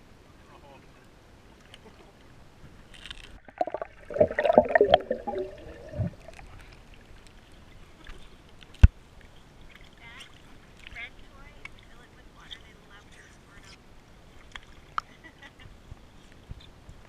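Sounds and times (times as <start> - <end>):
water splashing and gurgling: 3.4 - 7.2.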